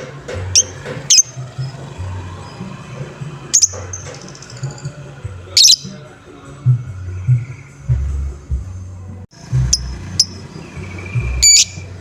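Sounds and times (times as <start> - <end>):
low repeating background beat: 0.0 - 12.0
lovebird squeaky calls: 0.5 - 1.8, 3.5 - 6.0, 9.7 - 12.0.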